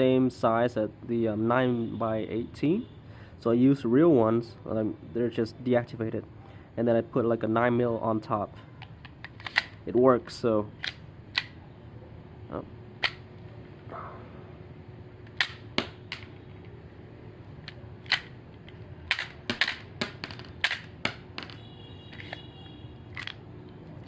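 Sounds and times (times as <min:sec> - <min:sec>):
toy pistol mechanical clicks: 0:15.3 - 0:16.3, 0:17.6 - 0:19.9.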